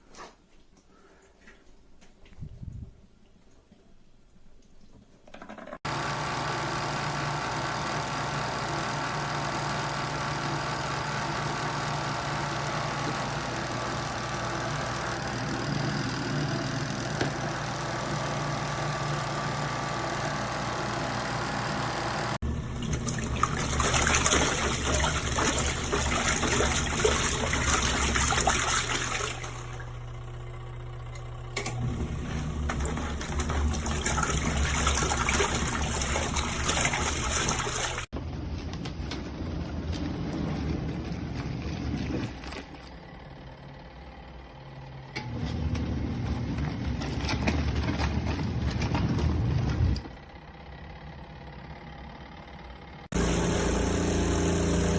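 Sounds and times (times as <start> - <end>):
washing machine motor hum: 5.5 - 54.9
water churning and splashing: 22.8 - 29.8, 32.6 - 38.1.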